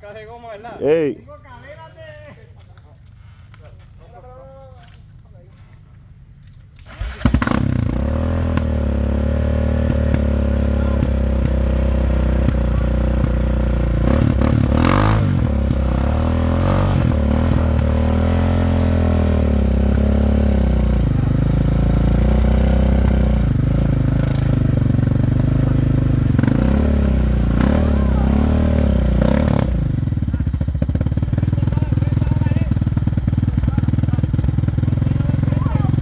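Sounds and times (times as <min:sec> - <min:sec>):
clatter: 0:06.8 - 0:18.2, 0:19.6 - 0:28.1
atv engine revving: 0:06.8 - 0:36.0.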